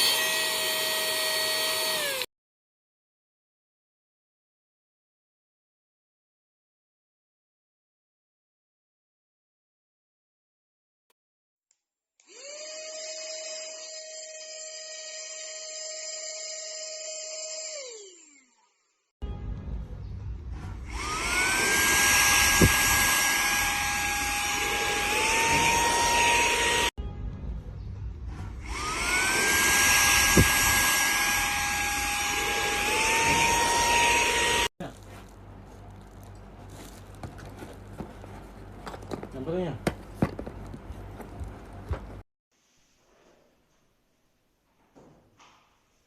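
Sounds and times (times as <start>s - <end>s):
handheld vacuum cleaner motor whine: 0.0s - 2.3s, 12.2s - 19.0s, 20.9s - 26.9s, 28.6s - 34.7s.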